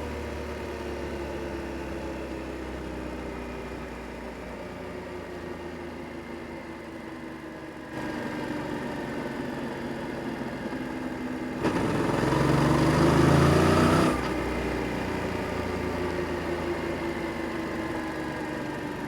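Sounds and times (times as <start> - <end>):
motorcycle engine revving: 11.6 - 14.5.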